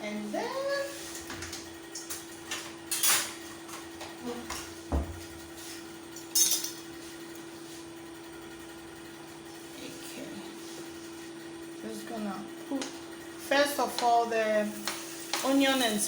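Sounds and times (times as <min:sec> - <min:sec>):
utensils clattering against pots: 0:01.1 - 0:04.8, 0:06.1 - 0:07.0, 0:14.0 - 0:16.0.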